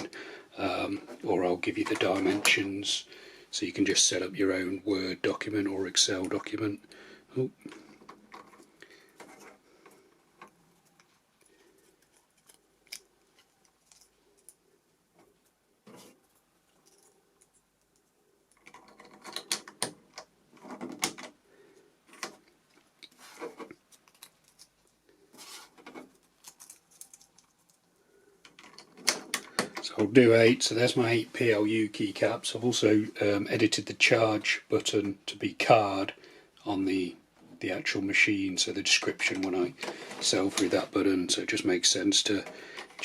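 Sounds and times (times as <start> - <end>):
plastic clicks and handling: 22.1 - 25.0.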